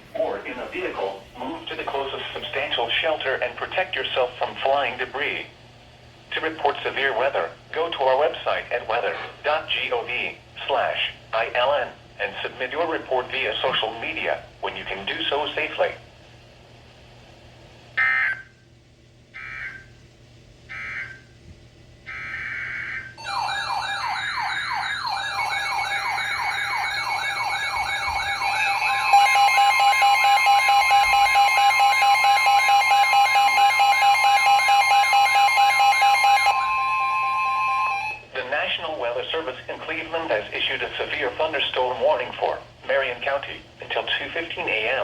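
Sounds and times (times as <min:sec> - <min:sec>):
warbling alarms: 0:18.0 - 0:18.6, 0:19.3 - 0:20.0, 0:20.7 - 0:21.4, 0:22.0 - 0:38.3
steady warning alert tone: 0:22.1 - 0:38.3.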